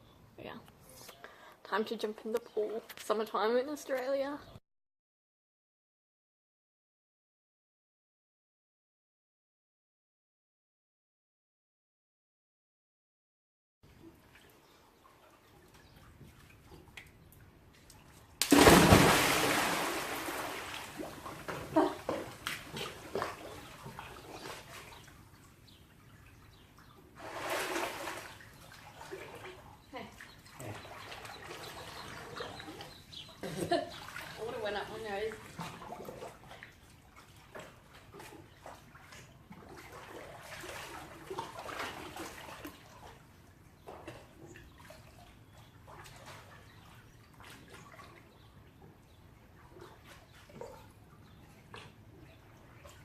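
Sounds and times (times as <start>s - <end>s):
water splashing in pool: 13.9s - 25.5s, 27.1s - 48.6s
water lapping: 13.9s - 53.0s.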